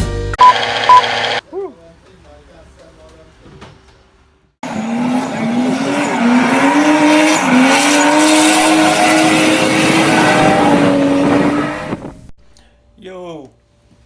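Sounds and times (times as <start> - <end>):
car engine at high revs: 0.4 - 1.4, 4.6 - 12.3.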